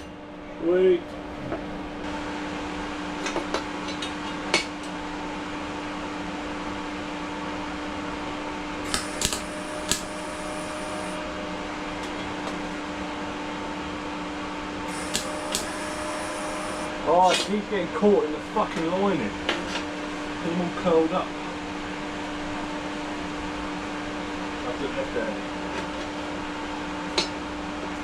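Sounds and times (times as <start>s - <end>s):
cooling fan humming: 4.7s - 28.0s
sharp metal clicks and taps: 8.9s - 11.1s, 14.9s - 15.8s.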